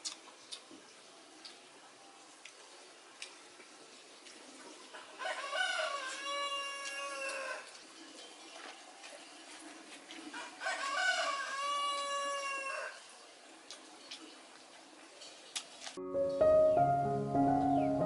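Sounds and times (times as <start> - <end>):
rooster crowing: 5.2 - 7.6, 10.6 - 13.0.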